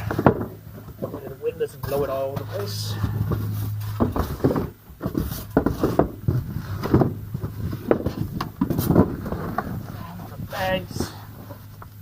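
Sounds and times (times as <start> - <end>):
styrofoam rustling and knocking: 1.9 - 10.8.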